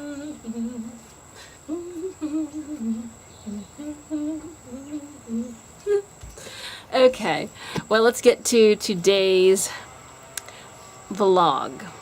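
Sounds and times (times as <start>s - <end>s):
woman humming: 0.0s - 6.6s.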